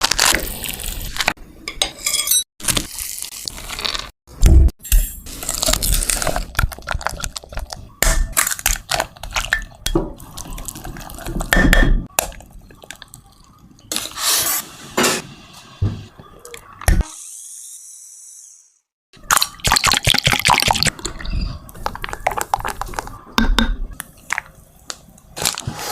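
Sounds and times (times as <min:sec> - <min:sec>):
liquid stirring: 0:08.6 - 0:11.6.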